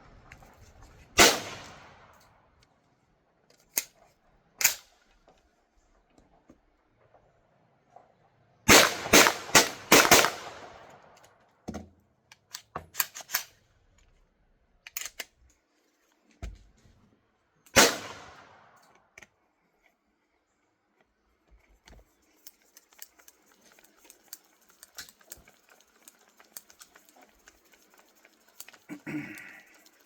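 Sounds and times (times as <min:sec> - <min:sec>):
suppressed pistol shots: 0:01.2 - 0:02.1, 0:08.7 - 0:10.9, 0:17.7 - 0:18.8.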